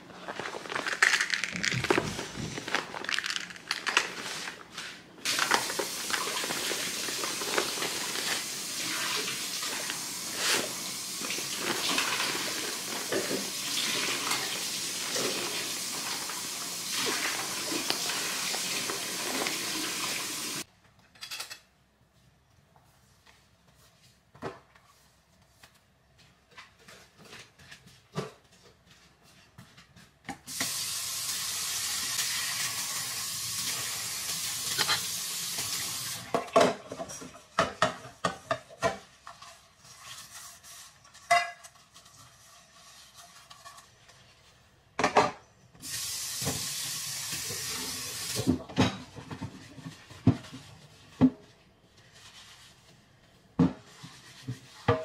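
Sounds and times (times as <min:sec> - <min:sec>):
dishes and utensils clinking: 0:21.2 - 0:21.7, 0:34.6 - 0:35.1.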